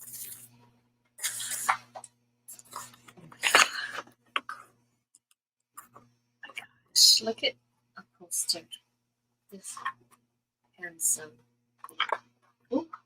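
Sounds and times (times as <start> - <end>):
faint electrical hum: 0.0 - 5.0.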